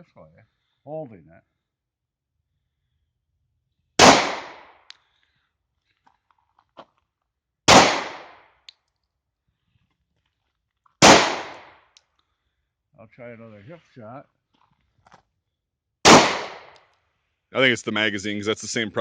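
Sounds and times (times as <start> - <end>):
pistol shots with echo: 4.0 - 4.8, 7.7 - 8.5, 11.0 - 11.8, 16.0 - 16.8.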